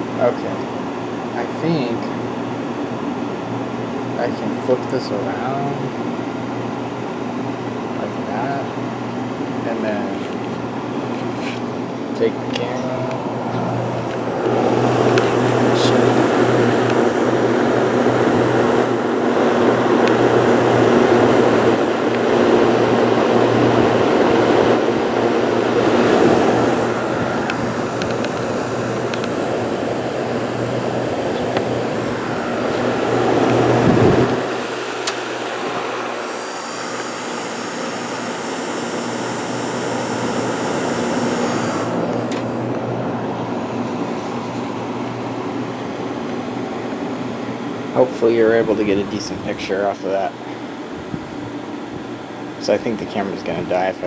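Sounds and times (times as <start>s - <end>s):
air conditioner humming: 0.0s - 54.0s
deep compressor rumble: 13.0s - 45.5s
faint high-pitched buzz: 24.8s - 42.6s.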